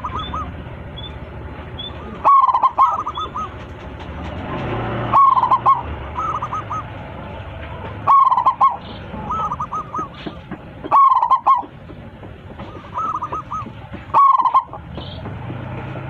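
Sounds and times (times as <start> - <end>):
dove cooing: 0.0 - 0.6, 1.8 - 3.7, 5.0 - 6.9, 8.0 - 11.8, 12.6 - 15.2.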